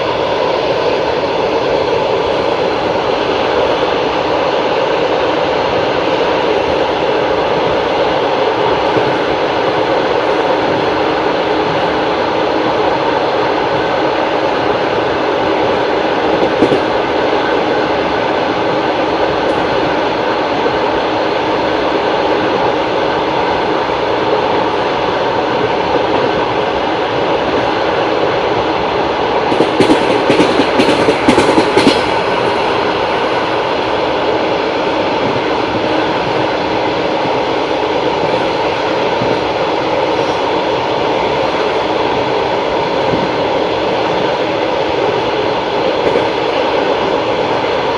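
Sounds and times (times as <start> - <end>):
train wheels rumbling on rails: 0.0 - 47.9
wheels clacking over rail joints: 29.5 - 32.6.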